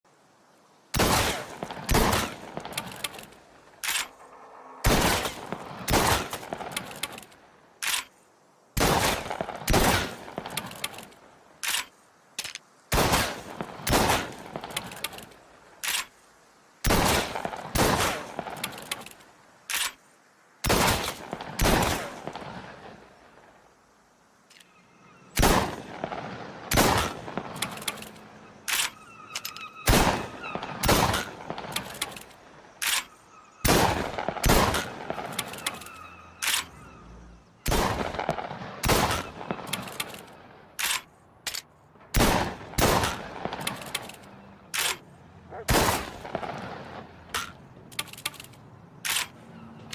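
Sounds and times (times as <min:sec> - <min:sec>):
shotgun blasts: 0:01.0 - 0:03.0, 0:04.8 - 0:07.0, 0:08.8 - 0:10.9, 0:12.9 - 0:14.9, 0:16.8 - 0:18.8, 0:25.4 - 0:27.9, 0:29.9 - 0:32.0, 0:33.6 - 0:35.7, 0:37.7 - 0:40.2, 0:42.1 - 0:44.0, 0:45.6 - 0:47.5.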